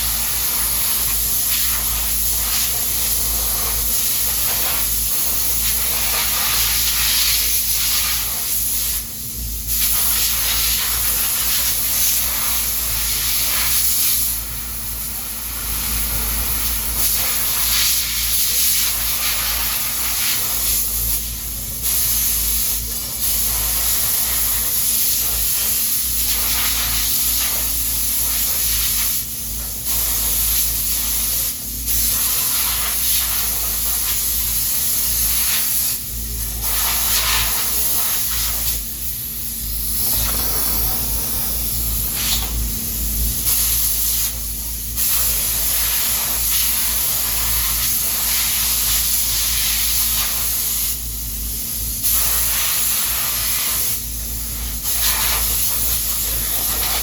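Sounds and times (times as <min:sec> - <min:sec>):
loud hissing spray: 0:00.0 - 0:57.0
steady low hum: 0:20.9 - 0:48.2.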